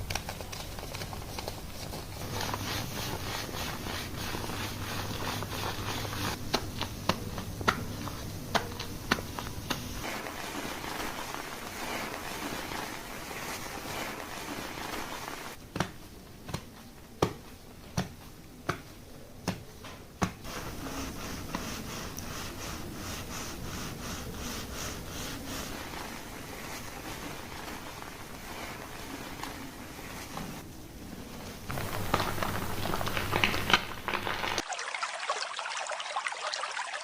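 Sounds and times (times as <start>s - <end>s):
hands rubbing hair and scalp: 0.0s - 15.6s, 20.4s - 30.6s.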